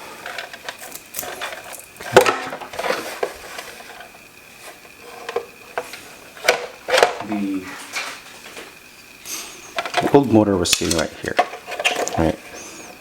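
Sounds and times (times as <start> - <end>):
plastic parts clicking and knocking: 0.3 - 3.3, 9.7 - 12.3.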